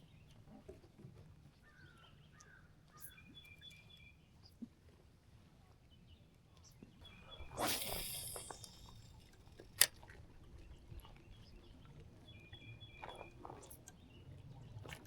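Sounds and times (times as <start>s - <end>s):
sharp click: 7.5s - 9.9s.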